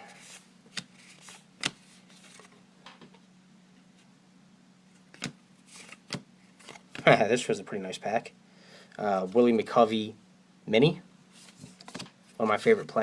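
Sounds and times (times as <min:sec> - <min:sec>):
trading cards flipping: 0:00.0 - 0:03.0, 0:05.0 - 0:07.2, 0:11.4 - 0:12.2.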